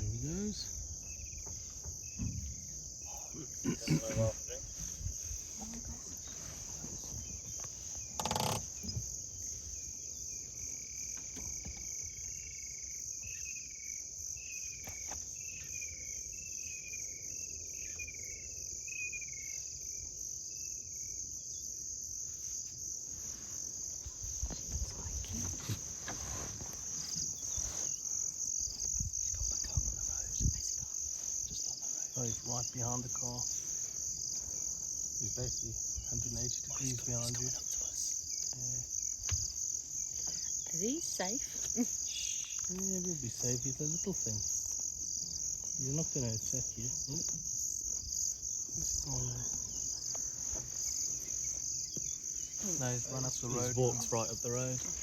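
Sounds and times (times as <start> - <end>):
crickets trilling: 0.0 - 55.0.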